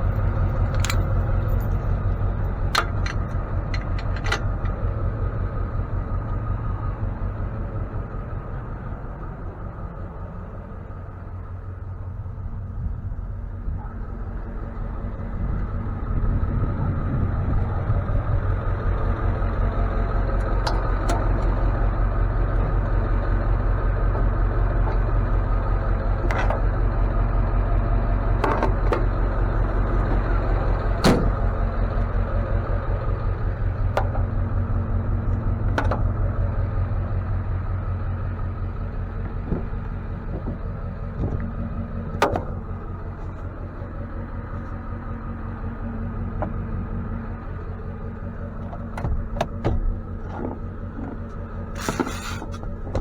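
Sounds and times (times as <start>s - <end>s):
truck engine drone: 0.0s - 53.0s
sharp clicks and knocks: 0.6s - 1.4s, 2.7s - 4.8s, 26.2s - 26.8s, 28.4s - 29.3s, 33.8s - 34.4s, 35.3s - 36.3s, 39.2s - 43.5s, 48.5s - 53.0s.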